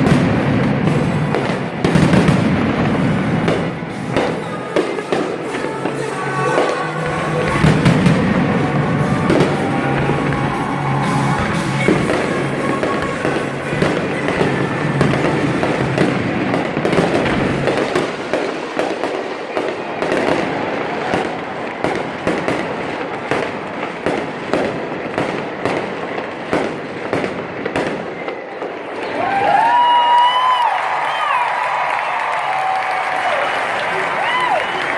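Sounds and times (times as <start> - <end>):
fireworks bursts and crackles: 0.0 - 34.9
music: 3.9 - 16.0.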